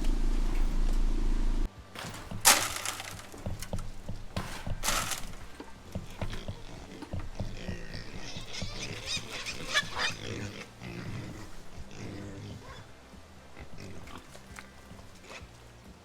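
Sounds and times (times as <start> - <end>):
hogs grunting: 2.0 - 15.8
hogs squealing: 5.8 - 15.7.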